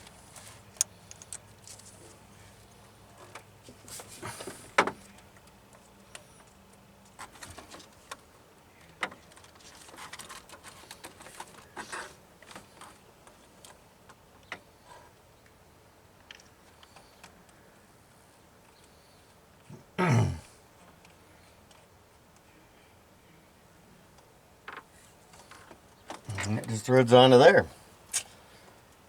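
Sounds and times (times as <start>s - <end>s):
metal parts clicking and scraping: 0.3s - 2.0s.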